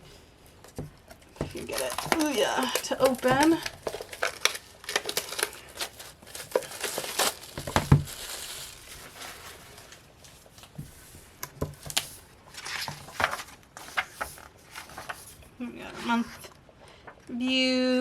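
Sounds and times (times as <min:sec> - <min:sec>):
packaging crinkling and tearing: 0:01.0 - 0:10.8.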